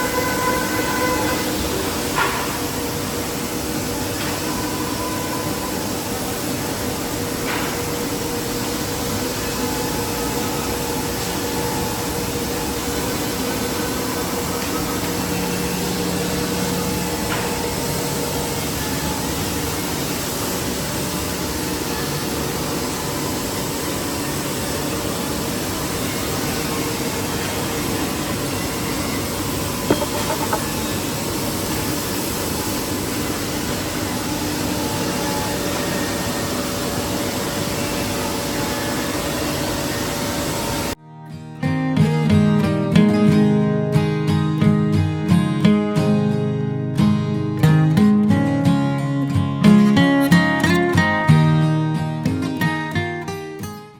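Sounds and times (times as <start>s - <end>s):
cnc router hum and hiss: 0.0s - 41.0s.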